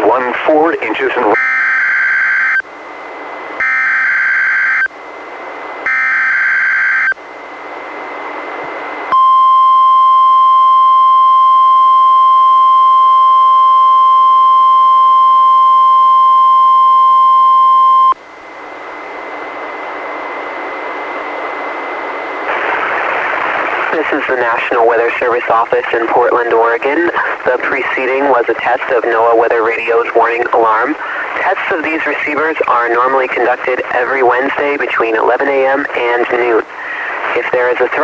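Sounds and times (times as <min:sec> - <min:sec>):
radio hiss: 0:00.0 - 0:01.4, 0:20.7 - 0:38.0
steady alarm tone: 0:01.3 - 0:19.2.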